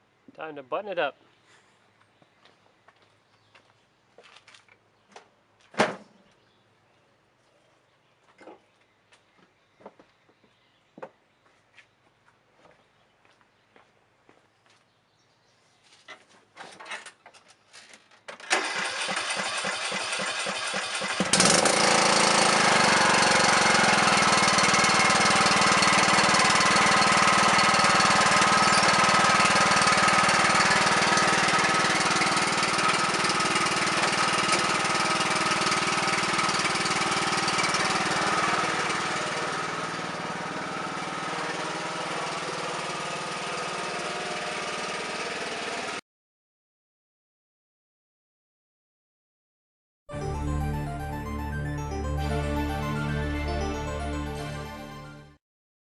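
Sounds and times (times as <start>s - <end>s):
lawn tractor engine running: 18.4s - 46.0s.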